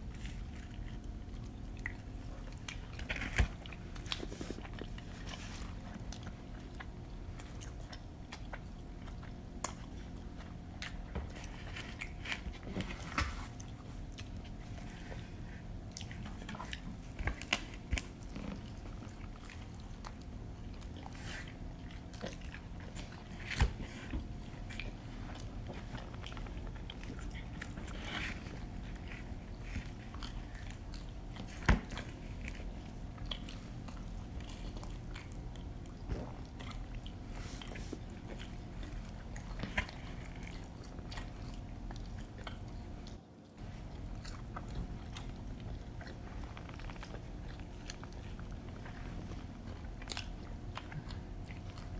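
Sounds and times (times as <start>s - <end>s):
steady low hum: 0.0s - 51.9s
wet chewing and crust crunches: 0.0s - 51.9s.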